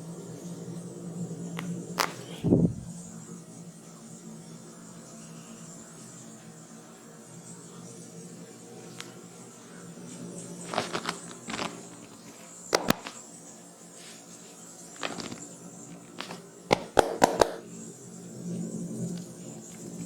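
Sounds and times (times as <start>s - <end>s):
high insect-like hiss: 0.0s - 20.0s
sharp cracking clicks: 10.7s - 13.2s, 16.0s - 17.6s.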